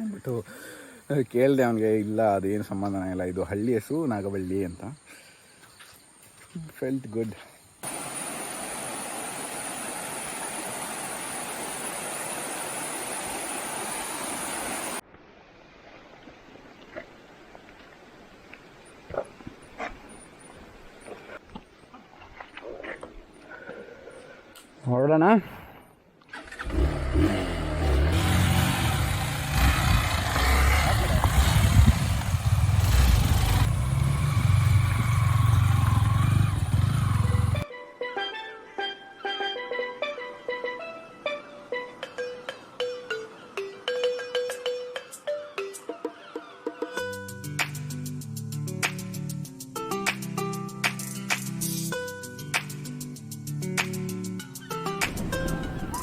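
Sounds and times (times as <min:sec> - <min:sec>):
rushing water: 0:07.8 - 0:19.7
motorcycle engine revving: 0:26.4 - 0:37.6.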